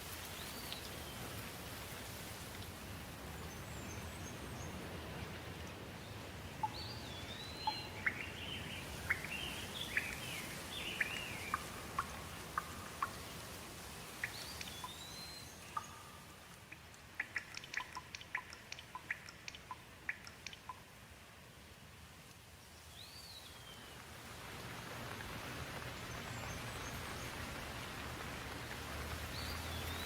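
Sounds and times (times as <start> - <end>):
steady rain falling: 0.0 - 30.0
raindrops ticking: 6.4 - 21.0, 24.0 - 30.0
bird calling: 6.6 - 13.2.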